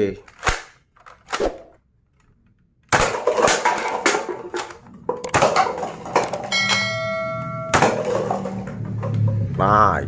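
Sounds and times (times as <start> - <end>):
plastic toy guns clattering: 0.2 - 6.8, 7.7 - 9.0.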